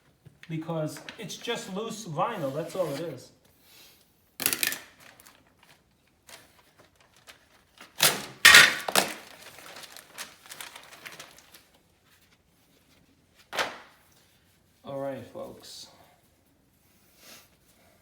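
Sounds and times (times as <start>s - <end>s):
wallcovering crackling and rustling: 0.0s - 3.3s, 4.9s - 18.0s.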